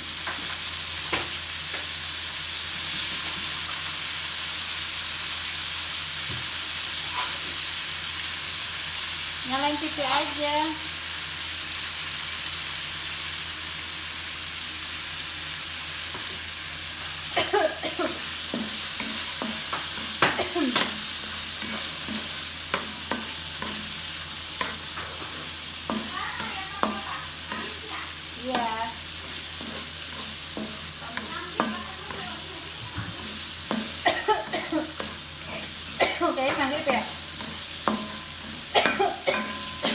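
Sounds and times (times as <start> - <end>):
squid sizzling in a pan: 0.0 - 39.9
spatula scraping a pan: 18.0 - 39.9.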